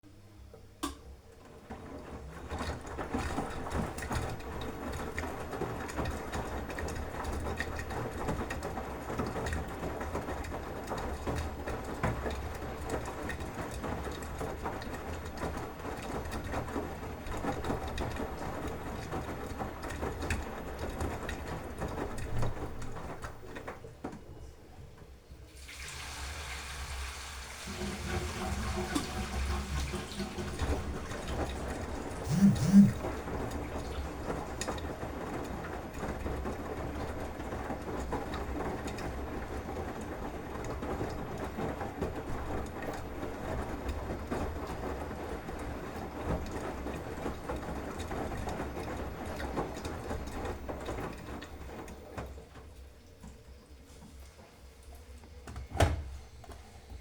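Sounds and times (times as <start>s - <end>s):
water rushing into washing machine: 0.8s - 24.2s, 25.4s - 57.0s
low hum: 32.3s - 33.1s.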